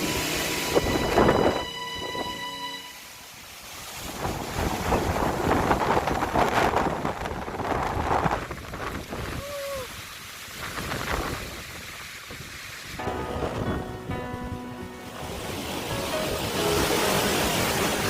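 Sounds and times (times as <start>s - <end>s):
storm wind buffeting microphone: 3.9s - 14.6s.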